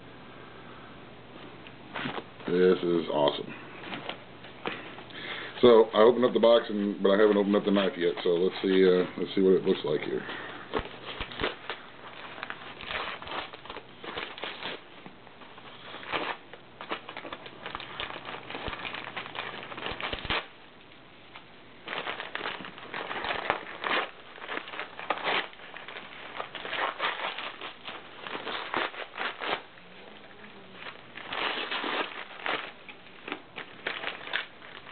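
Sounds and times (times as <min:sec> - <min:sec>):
packaging crinkling and tearing: 0:06.0 - 0:20.6, 0:21.3 - 0:29.8, 0:30.8 - 0:34.9.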